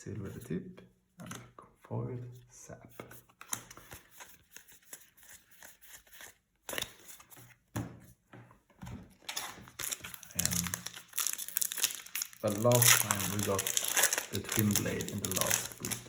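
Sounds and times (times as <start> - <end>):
foil wrapper crinkling: 9.2 - 16.0
trading cards clicking: 11.4 - 16.0.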